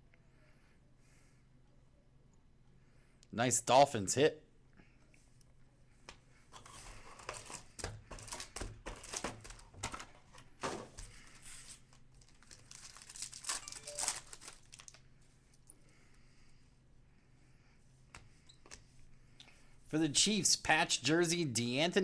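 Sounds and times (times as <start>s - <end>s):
wrappers tearing and crinkling: 6.6s - 15.1s.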